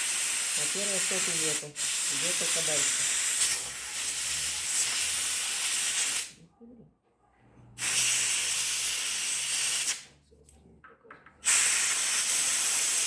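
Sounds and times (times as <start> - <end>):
compressed air hissing: 0.0 - 6.4, 7.8 - 10.1, 11.4 - 13.0.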